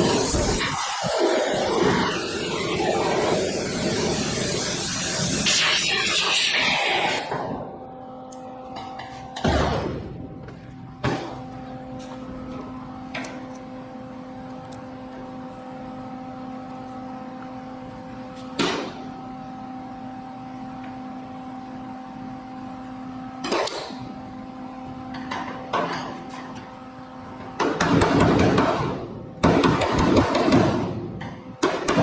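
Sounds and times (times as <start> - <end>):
welding bursts on sheet metal: 0.0 - 7.3
steady low hum: 0.0 - 32.0.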